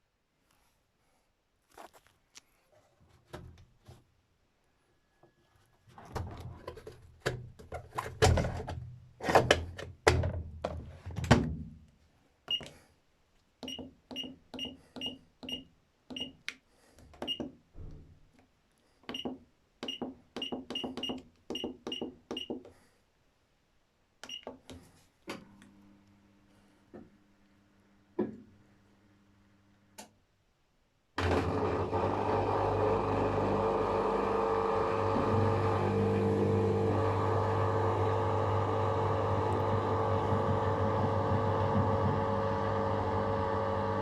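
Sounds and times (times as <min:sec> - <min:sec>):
loud knocks and clunks: 0:40.2 - 0:42.4.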